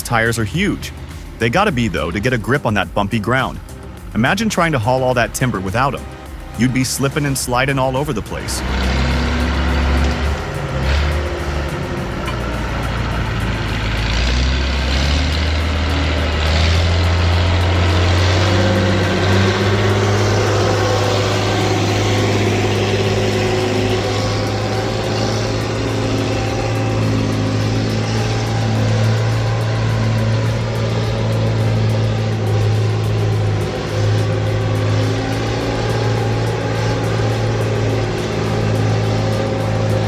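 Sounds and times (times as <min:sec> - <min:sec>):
heavy machine engine running: 0:00.0 - 0:40.0.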